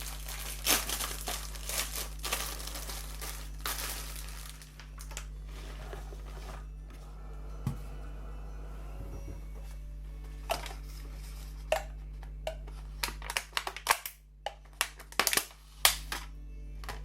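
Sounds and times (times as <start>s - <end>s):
steady low hum: 0.0s - 13.3s.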